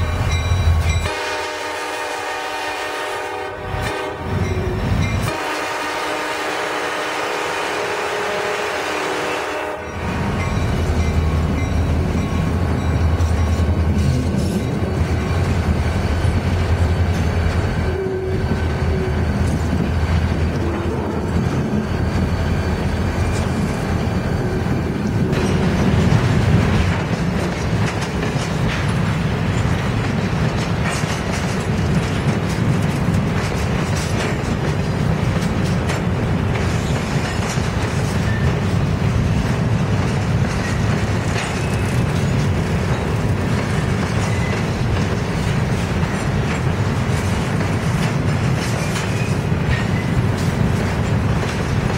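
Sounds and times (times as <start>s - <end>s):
passing train rumble: 0.0s - 51.9s
locomotive air horn: 1.0s - 4.5s, 5.2s - 10.1s
wheels clicking over rail joints: 9.9s - 51.9s.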